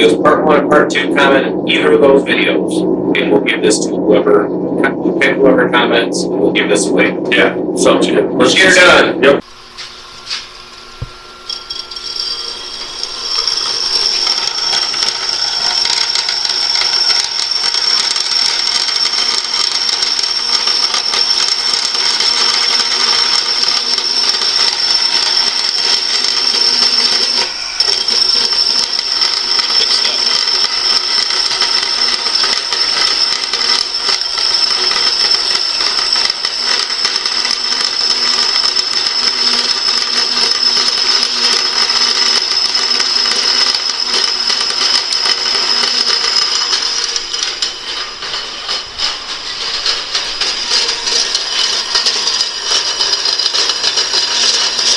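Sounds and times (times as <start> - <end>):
electric saw whining: 8.6 - 54.9.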